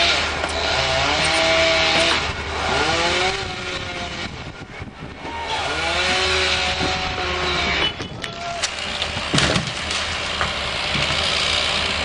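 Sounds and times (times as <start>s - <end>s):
two-stroke chainsaw revving: 0.0s - 4.4s, 5.5s - 7.9s, 10.5s - 12.0s.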